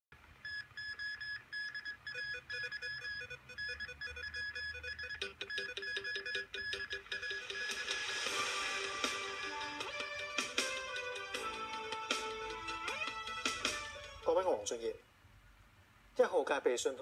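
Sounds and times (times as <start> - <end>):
high electronic beeping: 0.5 - 9.8.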